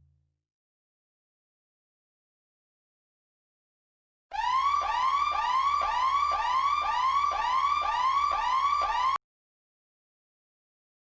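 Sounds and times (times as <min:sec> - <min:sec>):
electronic whooping siren: 0:04.3 - 0:09.2.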